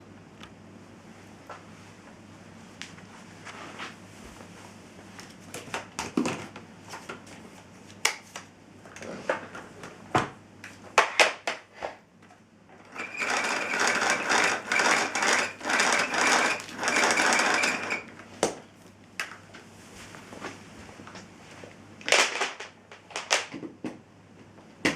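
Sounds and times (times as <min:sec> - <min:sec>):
vacuum cleaner rattling whir: 0:12.7 - 0:18.3.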